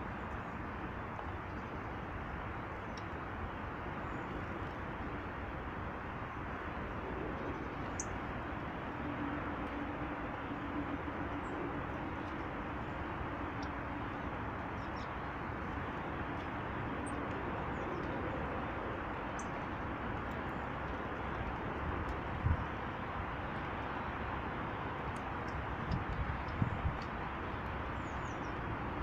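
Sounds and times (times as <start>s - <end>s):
steady rushing noise: 0.0s - 29.0s
low hum: 6.0s - 29.0s
small birds chirping: 27.9s - 28.8s.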